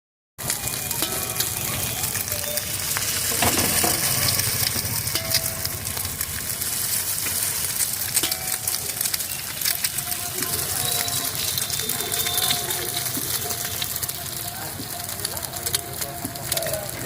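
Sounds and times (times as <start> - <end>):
rice sizzling in a wok: 0.4 - 17.0
metal spatula scraping a pan: 1.0 - 14.1.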